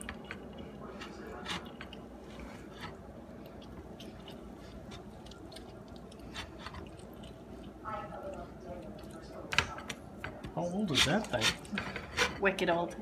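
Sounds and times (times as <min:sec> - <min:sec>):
lemon squishing on juicer: 0:10.5 - 0:11.8.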